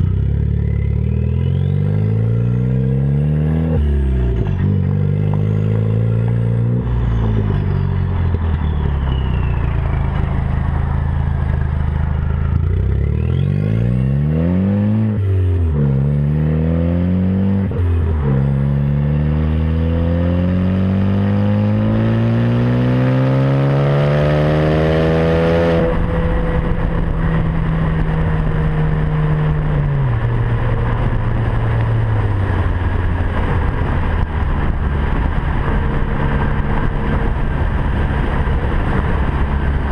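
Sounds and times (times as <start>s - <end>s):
car engine revving and accelerating: 0.0s - 39.9s.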